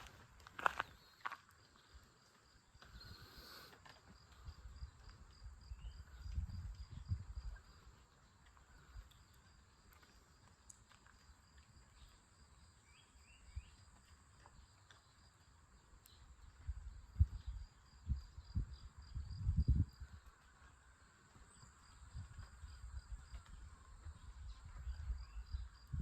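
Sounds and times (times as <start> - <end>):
faint insects chirping: 0.0 - 26.0.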